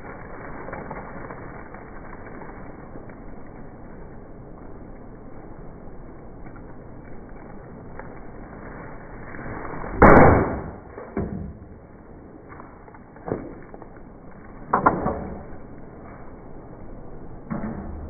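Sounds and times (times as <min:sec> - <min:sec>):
sledgehammer smashing objects: 0:09.9 - 0:11.6.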